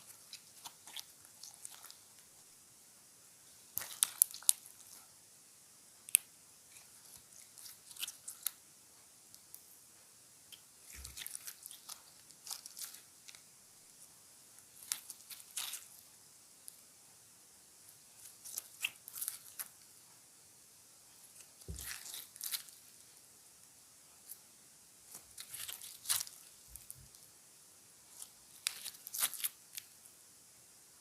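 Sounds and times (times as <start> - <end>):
slime crackling and popping: 0.0 - 2.0, 3.7 - 5.0, 10.5 - 13.4, 14.8 - 15.9, 18.2 - 19.7, 21.6 - 22.8, 25.1 - 27.0, 28.2 - 29.8.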